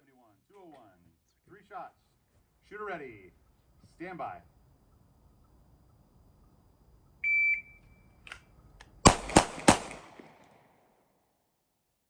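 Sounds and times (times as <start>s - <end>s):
rifle shots with echo: 9.0s - 10.9s.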